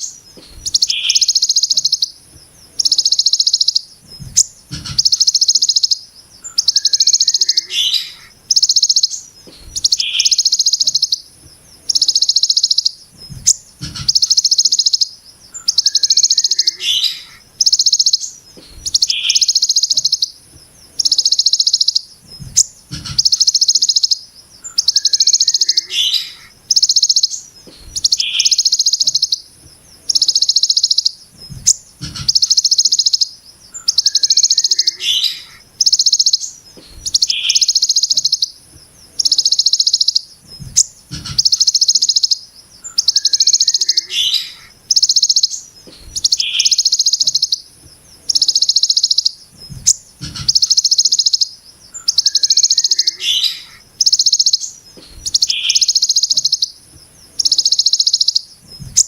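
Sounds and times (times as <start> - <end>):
bird short lower chirps: 0.0 - 56.8
bird rasping buzzy call: 4.4 - 11.3, 15.6 - 20.1, 24.6 - 29.3, 33.8 - 38.3.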